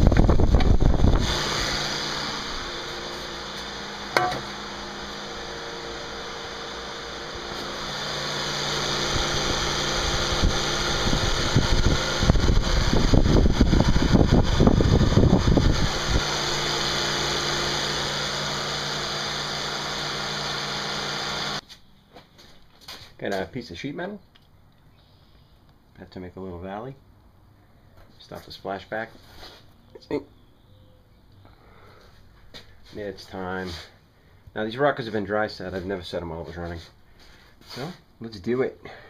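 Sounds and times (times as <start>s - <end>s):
mechanical hum: 0.0s - 39.0s.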